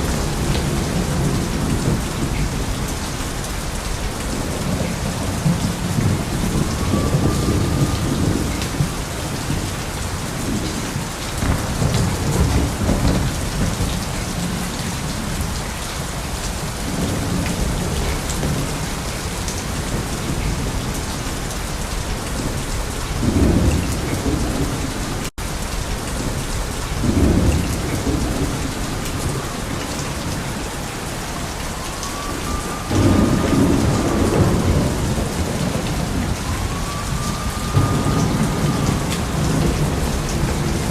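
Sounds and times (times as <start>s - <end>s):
rolling thunder rumbles: 0.0s - 40.9s
steady rain falling: 0.0s - 40.9s.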